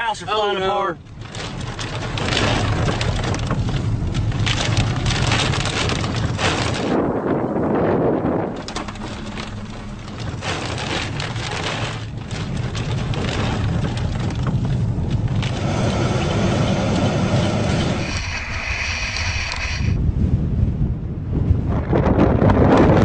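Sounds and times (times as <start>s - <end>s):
wind roaring: 0.0s - 23.0s
debris knocking and splintering: 1.0s - 7.1s, 8.5s - 15.7s.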